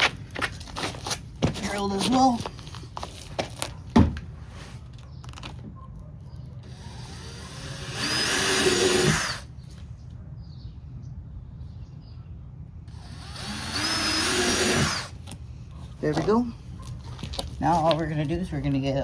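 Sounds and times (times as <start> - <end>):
power drill drilling: 6.6 - 9.5, 12.9 - 15.2.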